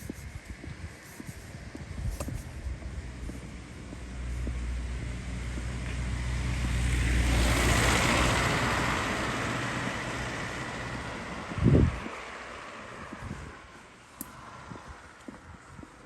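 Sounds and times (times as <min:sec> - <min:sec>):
vehicle passing by: 0:03.0 - 0:15.8.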